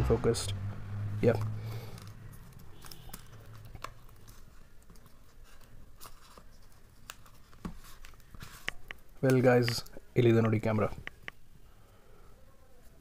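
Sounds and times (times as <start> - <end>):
packaging rustling: 1.2 - 10.8
small clicks and taps: 7.1 - 11.4.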